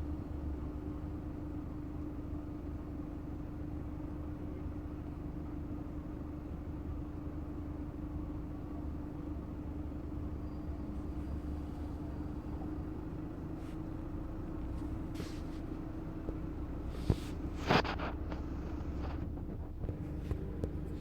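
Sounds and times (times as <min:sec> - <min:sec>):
faint rumble: 0:08.6 - 0:21.0.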